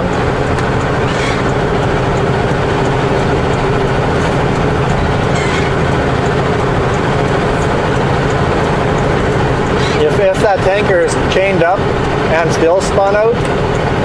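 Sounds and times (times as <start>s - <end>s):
road noise inside cab: 0.0s - 14.0s
truck diesel engine droning: 0.0s - 14.0s.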